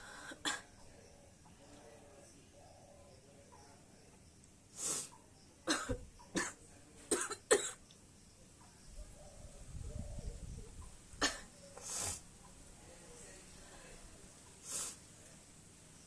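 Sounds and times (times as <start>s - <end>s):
woman coughing: 5.7s - 7.8s, 11.2s - 11.5s.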